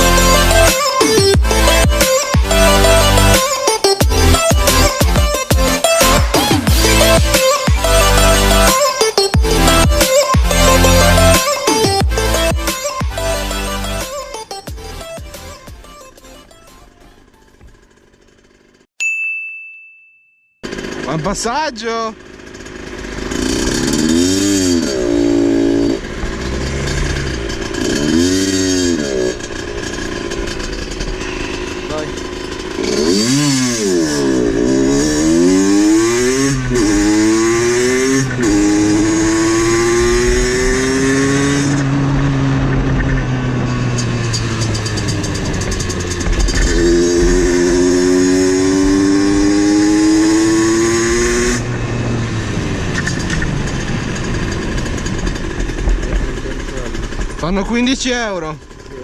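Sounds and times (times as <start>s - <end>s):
two-stroke motorcycle engine revving: 0.0s - 16.5s, 17.1s - 18.9s, 20.6s - 59.0s.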